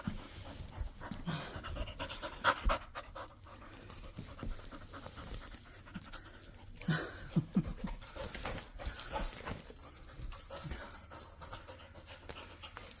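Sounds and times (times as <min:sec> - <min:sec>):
electronic mouse squeaks: 0:03.9 - 0:04.2, 0:05.2 - 0:06.2, 0:08.2 - 0:13.0.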